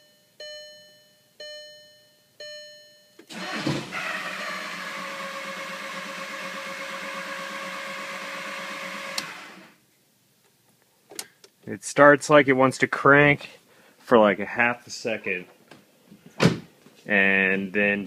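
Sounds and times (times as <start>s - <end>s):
starter cranking engine: 3.3s - 9.7s.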